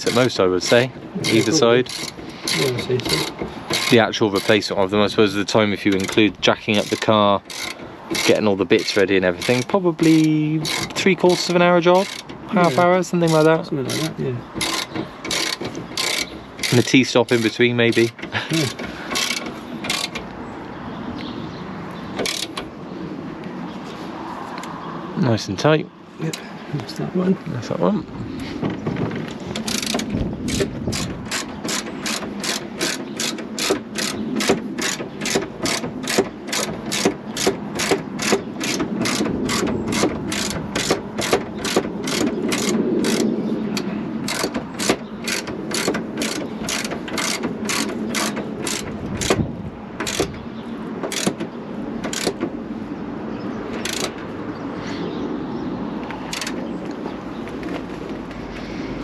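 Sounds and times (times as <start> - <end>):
ratchet wrench clicking: 1.2 - 4.6, 6.8 - 20.2, 22.2 - 22.6, 29.6 - 49.4, 50.0 - 50.3, 51.1 - 51.4, 52.1 - 52.4, 53.8 - 54.2.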